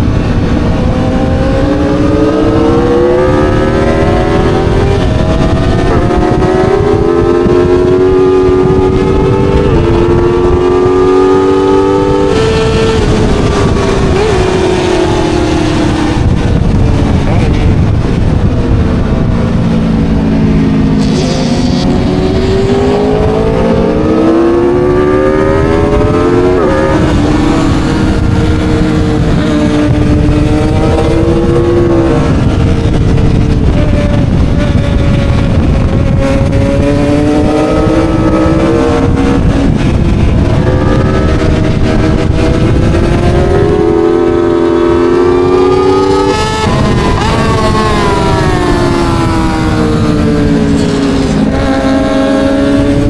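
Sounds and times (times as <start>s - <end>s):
motorcycle engine accelerating: 0.0s - 53.0s
rumbling noise: 12.1s - 53.0s.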